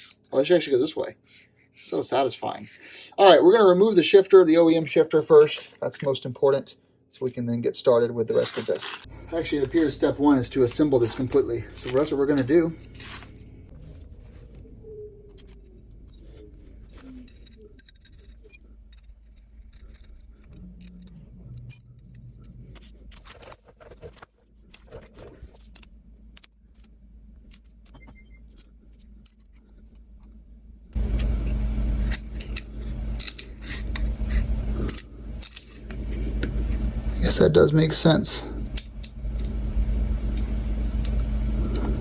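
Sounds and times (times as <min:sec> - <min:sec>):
small metal parts clinking: 0:08.3 - 0:13.7, 0:15.3 - 0:26.9, 0:31.1 - 0:37.4.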